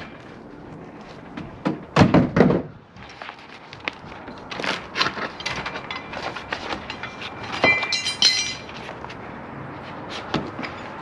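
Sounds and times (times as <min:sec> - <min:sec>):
ringing metal clang: 0:06.9 - 0:08.7.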